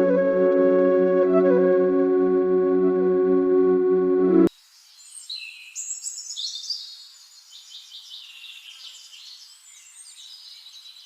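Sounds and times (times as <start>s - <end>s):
faint steady hiss: 4.4s - 11.0s.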